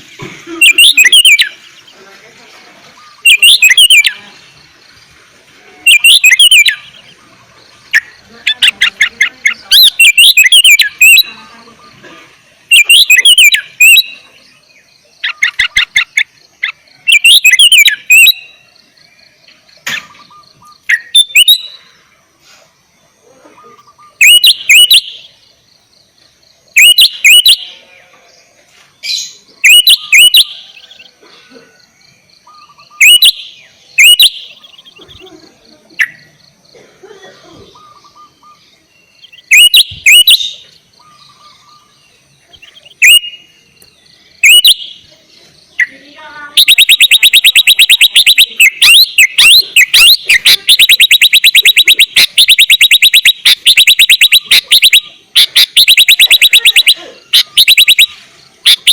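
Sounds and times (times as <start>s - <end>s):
fast rattling bird trill: 0.0s - 2.0s, 3.1s - 5.0s, 5.8s - 11.5s, 12.6s - 14.3s, 15.2s - 18.6s, 19.8s - 21.8s, 23.8s - 25.5s, 26.7s - 27.7s, 29.2s - 31.2s, 32.4s - 35.4s, 37.7s - 43.6s, 44.4s - 45.1s, 45.8s - 58.9s
bird whistled notes: 0.5s - 1.6s, 3.0s - 4.3s, 5.8s - 7.2s, 9.5s - 12.0s, 12.7s - 14.2s, 17.1s - 18.6s, 19.9s - 21.8s, 23.7s - 25.3s, 26.8s - 27.8s, 29.1s - 31.1s, 32.4s - 35.3s, 37.7s - 43.5s, 44.4s - 45.1s, 45.8s - 58.9s.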